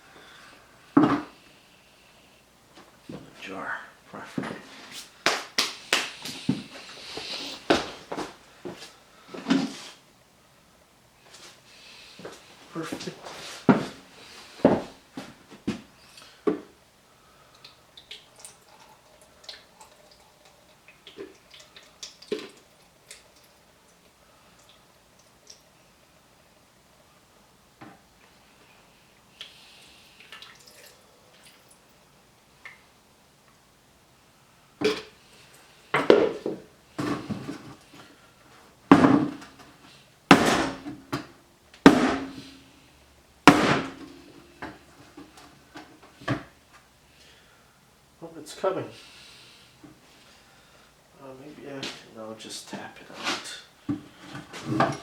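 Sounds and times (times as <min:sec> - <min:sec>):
hard knocks on metal: 0:38.9 - 0:39.4, 0:40.3 - 0:41.0, 0:41.9 - 0:42.5, 0:43.5 - 0:44.1.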